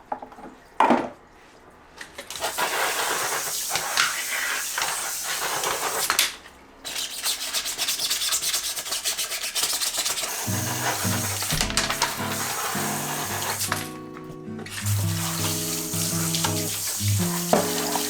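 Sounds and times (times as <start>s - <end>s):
brush scrubbing: 6.9s - 13.9s, 14.7s - 18.0s
background music: 10.5s - 18.0s.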